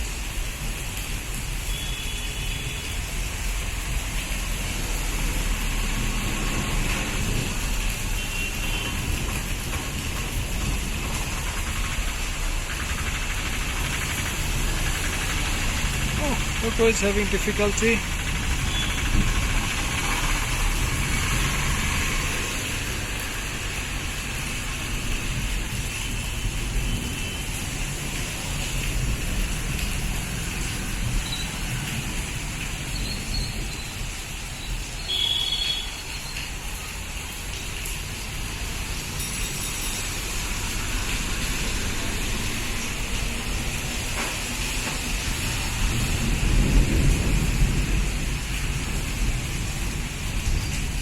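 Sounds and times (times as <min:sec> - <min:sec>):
road traffic rumble: 0:00.0 - 0:51.0
steady rain hiss: 0:00.0 - 0:51.0.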